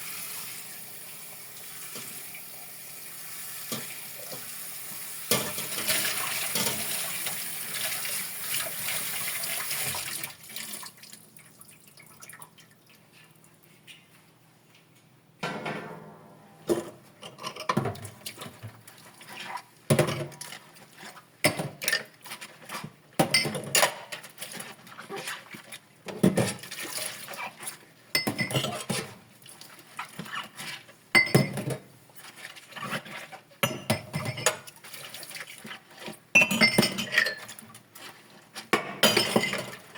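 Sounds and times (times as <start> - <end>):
dishes clattering and clinking: 5.3 - 7.0, 15.4 - 18.8, 19.4 - 20.6, 23.2 - 24.6, 28.2 - 29.2, 31.2 - 31.9, 33.6 - 34.8, 36.4 - 37.7, 38.6 - 39.9.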